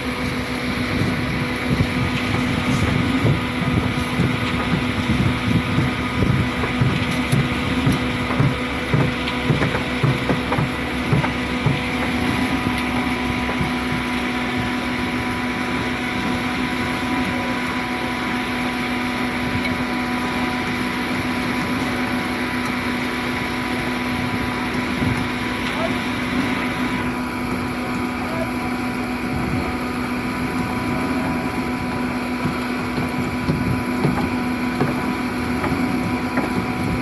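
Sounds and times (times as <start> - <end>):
concrete pump running: 0.0 - 37.0
steady machine hum: 0.0 - 37.0
low rhythmic pulsing: 0.2 - 37.0.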